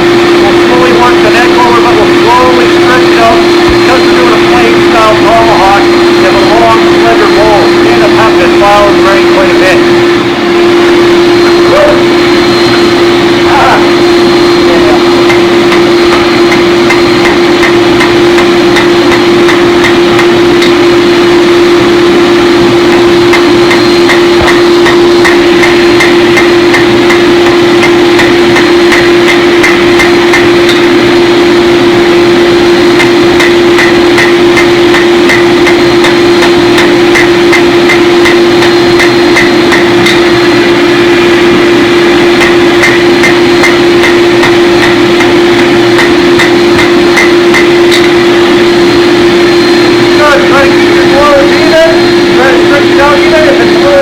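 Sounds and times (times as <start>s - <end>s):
loud steady hum: 0.0s - 54.0s
hammer striking steel: 15.1s - 21.0s, 22.8s - 31.8s, 32.7s - 41.4s, 42.1s - 48.5s.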